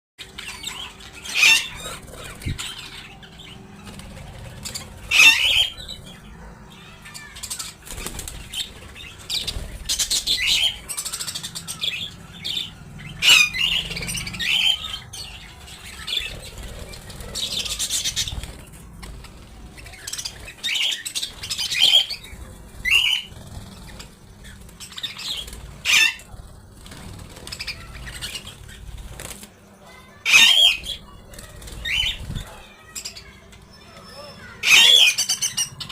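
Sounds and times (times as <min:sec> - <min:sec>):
budgerigars chirping: 0:00.4 - 0:06.4, 0:07.2 - 0:18.7, 0:19.8 - 0:26.4, 0:27.0 - 0:28.9, 0:30.2 - 0:32.6
wings flapping: 0:01.6 - 0:06.5, 0:07.2 - 0:30.2, 0:30.8 - 0:33.2.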